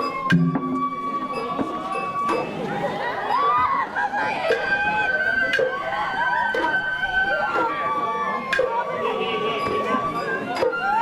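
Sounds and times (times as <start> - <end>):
festival flute and drum music: 0.0 - 11.0.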